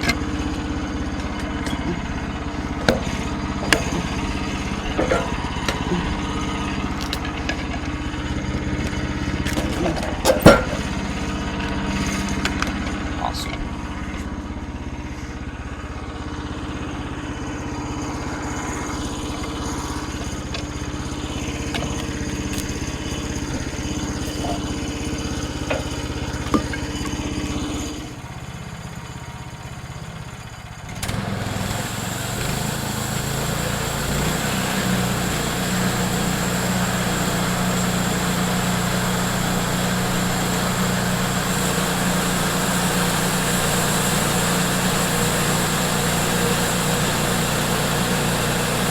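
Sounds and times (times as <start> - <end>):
sawmill engine running: 0.0 - 48.9.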